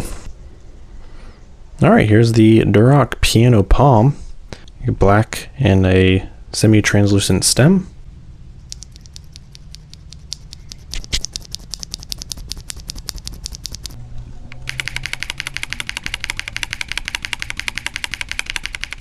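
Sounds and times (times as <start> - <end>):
keyboard switches clacking: 8.7 - 14.0, 14.6 - 19.0.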